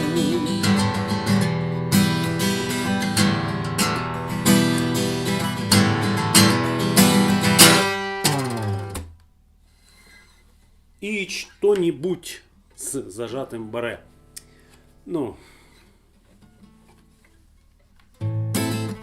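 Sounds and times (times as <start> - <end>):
acoustic guitar strummed chords: 0.0 - 9.2, 18.2 - 19.0.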